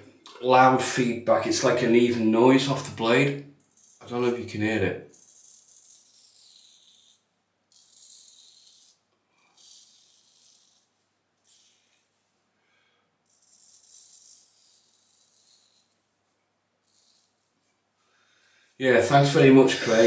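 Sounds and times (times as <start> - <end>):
razor shaving stubble: 3.7 - 12.0, 13.3 - 15.9, 16.8 - 17.5, 19.1 - 20.0.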